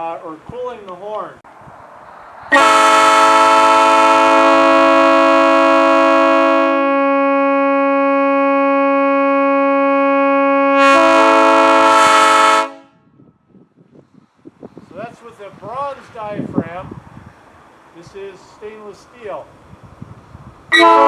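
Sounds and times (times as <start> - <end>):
train air horn chord: 2.5 - 13.0, 20.7 - 21.0.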